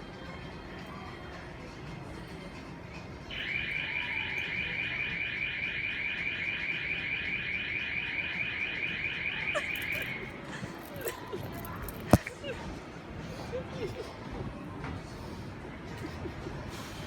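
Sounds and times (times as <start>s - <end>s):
warbling electronic alarm: 3.3s - 10.3s.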